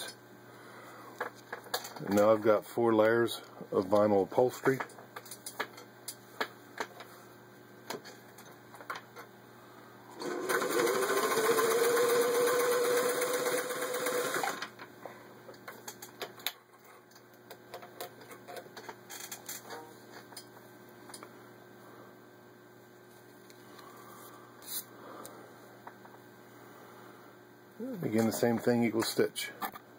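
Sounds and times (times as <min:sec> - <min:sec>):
sewing machine stitching: 0:10.2 - 0:14.6.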